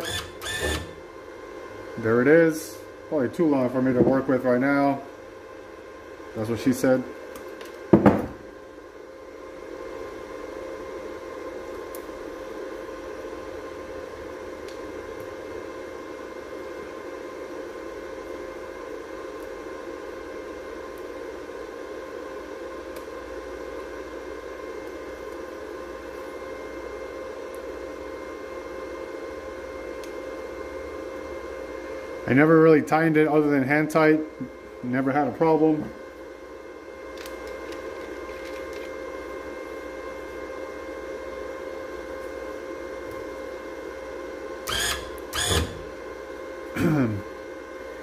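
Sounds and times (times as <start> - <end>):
welder humming: 0.0 - 5.0, 37.1 - 48.0.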